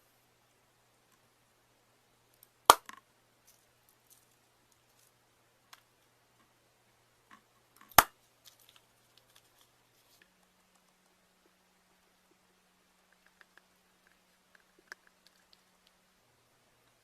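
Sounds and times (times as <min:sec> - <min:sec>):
balloon popping with a bang: 0:02.7 - 0:03.0
faint clicks and taps: 0:07.3 - 0:16.0.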